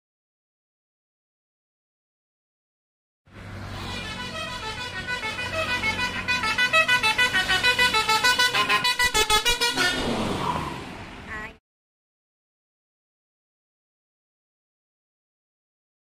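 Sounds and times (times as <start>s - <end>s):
bus horn melody: 3.6s - 10.4s.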